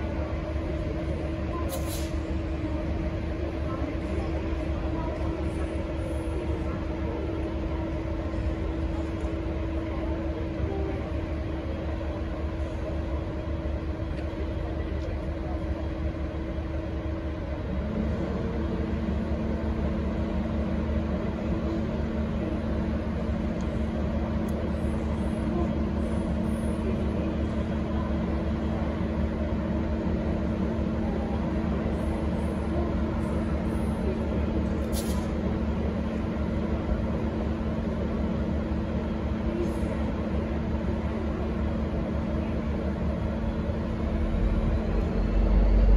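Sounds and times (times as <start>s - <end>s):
diesel locomotive engine humming: 0.0s - 45.9s.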